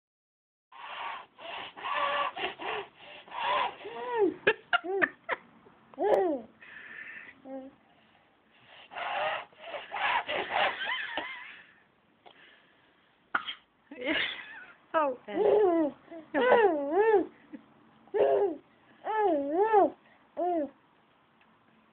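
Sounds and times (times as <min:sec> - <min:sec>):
baby sniffling: 0:00.8 - 0:04.3, 0:08.8 - 0:10.8.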